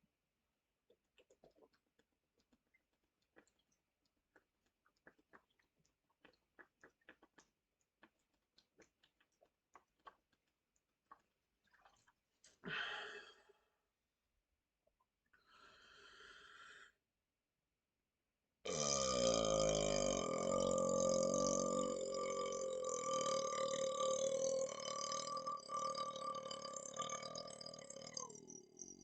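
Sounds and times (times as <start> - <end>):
person breathing: 12.6 - 13.6, 15.4 - 17.0.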